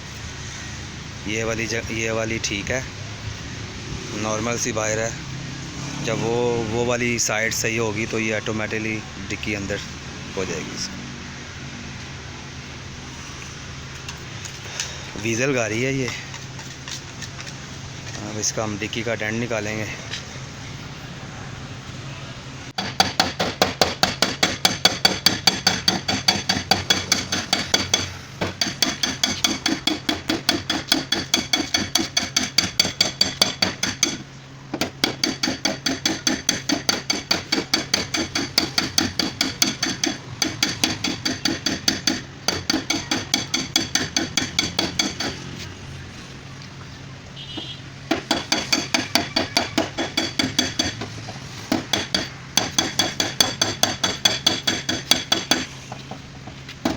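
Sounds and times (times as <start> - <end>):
hammer on sheet metal: 22.8 - 34.2, 34.8 - 45.4, 48.1 - 51.1, 51.7 - 55.7.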